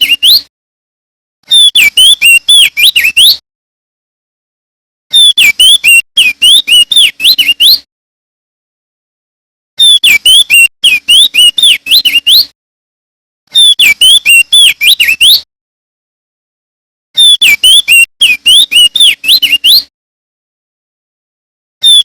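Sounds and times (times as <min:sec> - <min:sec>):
bird singing whistled notes: 0:00.0 - 0:00.5, 0:01.5 - 0:03.4, 0:05.1 - 0:07.9, 0:09.8 - 0:12.5, 0:13.5 - 0:15.5, 0:17.2 - 0:19.9.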